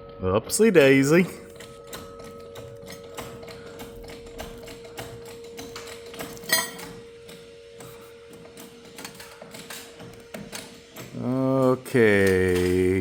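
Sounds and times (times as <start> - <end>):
jack cranking clicks: 0.6 - 13.0
ringing metal clank: 0.7 - 8.0.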